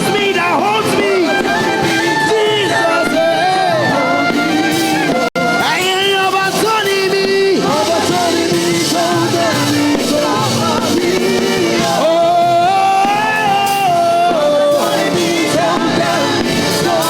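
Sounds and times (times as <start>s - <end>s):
gospel band accompaniment: 0.0s - 17.0s
person singing: 0.0s - 17.0s.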